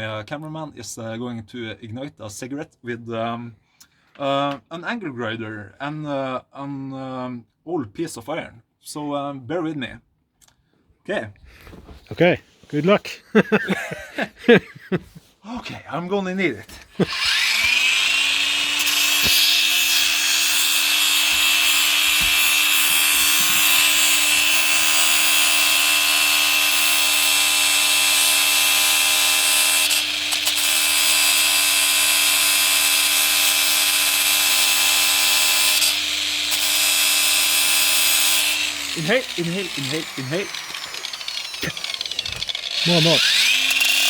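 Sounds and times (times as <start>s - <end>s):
angle grinder grinding iron: 16.7s - 44.0s.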